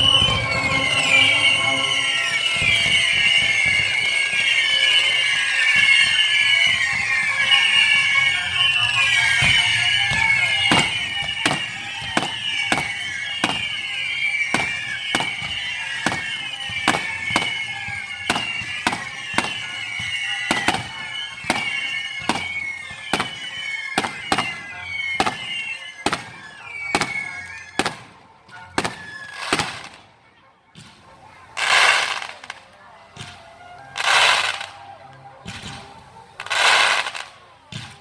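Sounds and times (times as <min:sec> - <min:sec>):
music playing: 0:00.0 - 0:27.2
fireworks bangs: 0:00.0 - 0:30.1.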